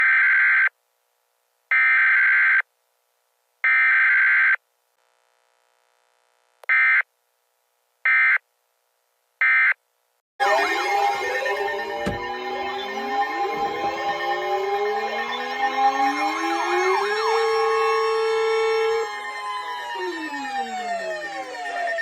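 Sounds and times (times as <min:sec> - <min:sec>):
weather alert radio beeping: 0:10.4 - 0:22.0.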